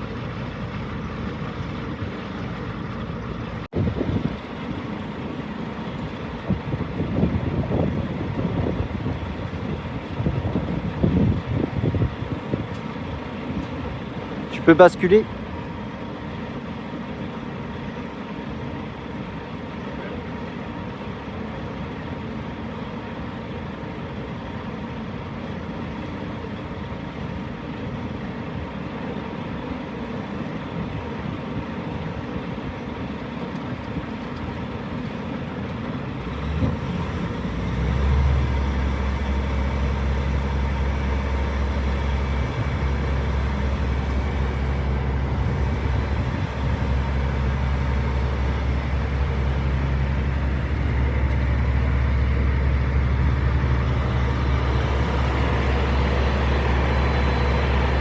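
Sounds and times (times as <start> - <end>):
deep drone: 0.0 - 5.2, 36.3 - 58.0
truck engine running: 0.0 - 31.2, 31.8 - 58.0.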